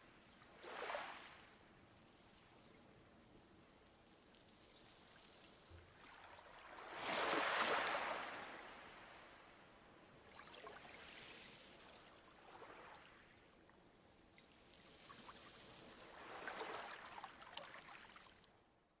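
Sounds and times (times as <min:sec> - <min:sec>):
waves washing onto pebbles: 0:06.8 - 0:08.4, 0:14.6 - 0:18.3.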